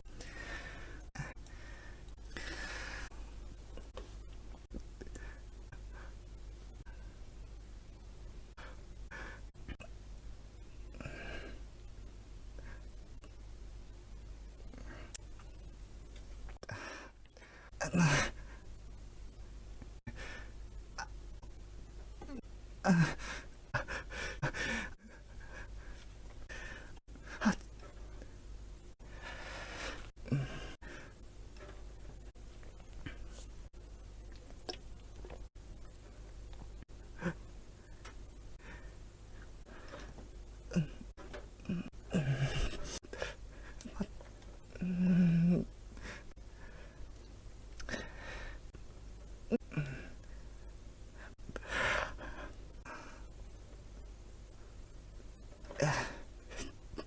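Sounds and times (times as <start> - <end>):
person breathing audibly: 0.0 - 3.9, 8.5 - 9.8, 16.6 - 18.7, 22.2 - 28.3, 29.0 - 31.8, 47.8 - 48.7.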